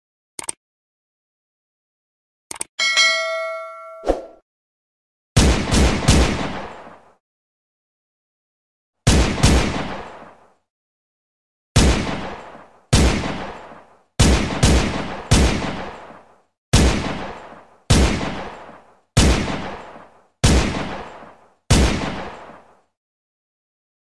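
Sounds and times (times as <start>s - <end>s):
pistol shots with echo: 5.4s - 7.0s, 9.1s - 10.4s, 11.8s - 16.2s, 16.8s - 22.7s.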